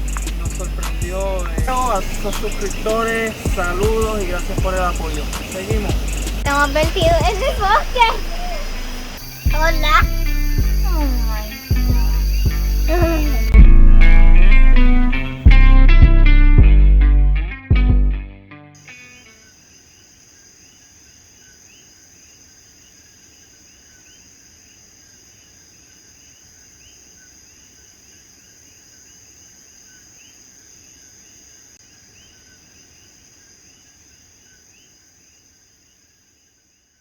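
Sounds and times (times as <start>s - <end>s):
insects trilling: 0.0s - 13.6s, 18.8s - 37.0s
tree frogs chirping: 0.0s - 13.6s, 18.8s - 37.0s
guitar notes ringing: 6.5s - 19.3s.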